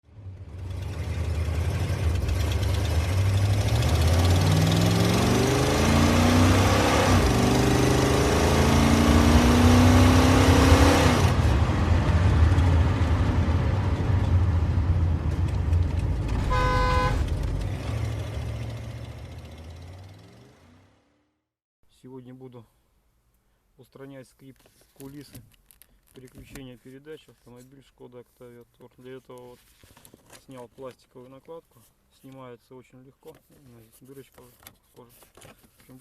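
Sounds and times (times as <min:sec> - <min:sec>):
car engine accelerating: 0:00.0 - 0:21.3
road and wind noise: 0:00.1 - 0:20.9
car horn toot: 0:16.4 - 0:17.3.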